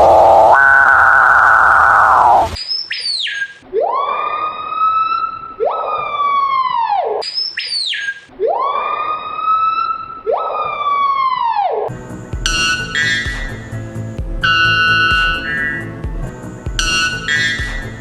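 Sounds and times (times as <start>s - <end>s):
bird siren-like calls: 0.0s - 11.9s
music: 11.9s - 18.0s.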